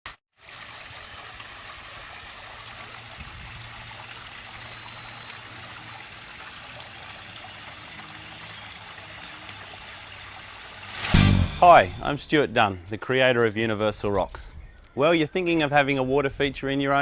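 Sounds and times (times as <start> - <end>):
water trickling over waterfall: 0.3 - 11.2.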